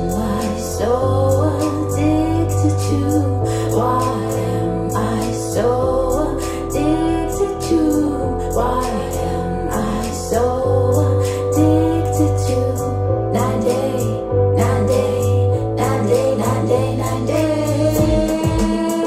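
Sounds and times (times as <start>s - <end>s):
wordless female vocal: 0.0s - 19.0s
electronic dance-pop music: 13.3s - 19.0s.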